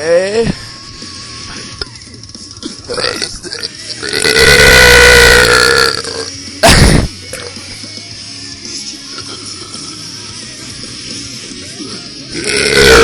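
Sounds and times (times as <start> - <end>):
person burping: 2.6 - 7.7, 12.3 - 13.0.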